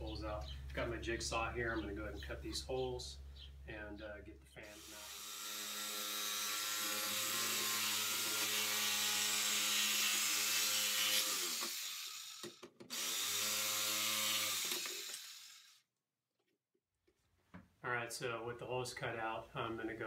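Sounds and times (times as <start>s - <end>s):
electric jigsaw cutting plastic: 4.8s - 15.8s.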